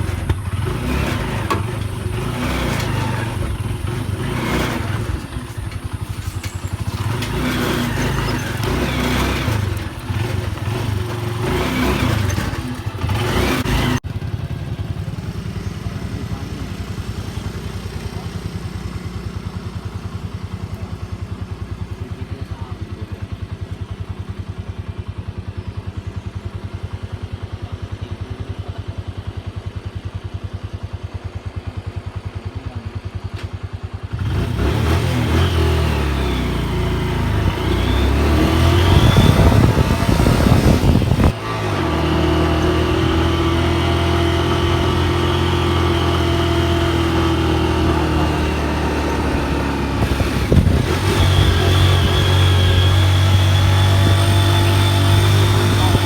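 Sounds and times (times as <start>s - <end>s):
engine whining up and down: 0.0s - 20.9s, 34.1s - 56.0s
small engine pulsing: 0.0s - 56.0s
steady engine hum: 0.0s - 56.0s.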